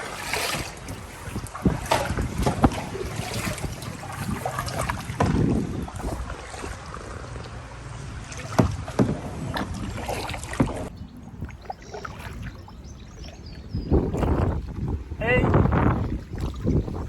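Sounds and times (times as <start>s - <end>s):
kayak paddles in water: 0.0s - 17.0s
wind rumble on microphone: 0.0s - 17.0s.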